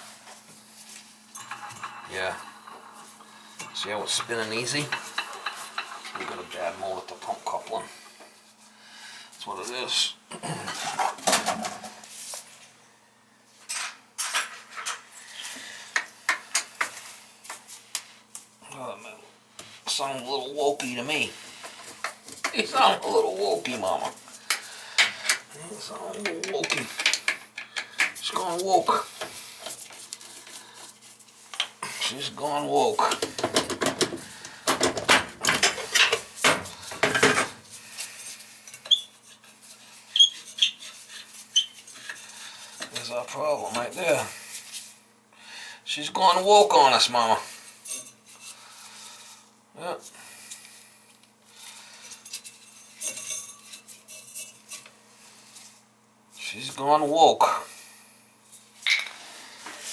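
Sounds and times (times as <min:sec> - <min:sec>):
faint steady hum: 0:00.0 - 0:40.3
metal tools clinking and scraping: 0:00.9 - 0:07.8, 0:13.6 - 0:15.1, 0:31.6 - 0:44.0, 0:47.8 - 0:48.5, 0:52.0 - 0:54.9
metal parts clattering and clinking: 0:01.4 - 0:06.6, 0:33.1 - 0:37.6.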